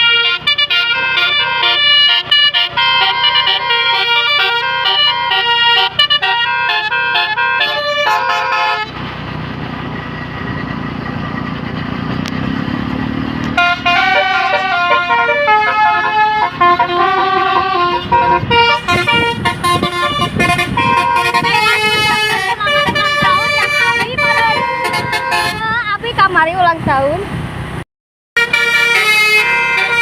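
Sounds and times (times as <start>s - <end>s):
multi-tone bus horn tune: 0.0s - 9.0s, 13.5s - 26.0s, 28.4s - 30.0s
engine rumble: 0.0s - 30.0s.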